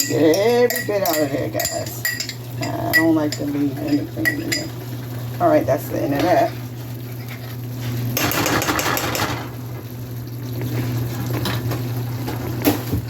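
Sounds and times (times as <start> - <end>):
steady low hum: 0.0 - 8.3.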